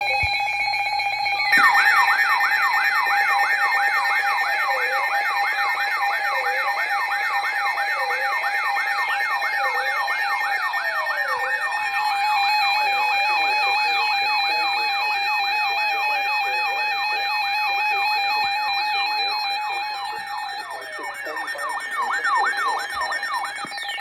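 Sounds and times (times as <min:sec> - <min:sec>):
electronic siren yelp: 0:00.0 - 0:24.0
siren steady tone: 0:00.0 - 0:24.0
siren wail: 0:00.0 - 0:24.0.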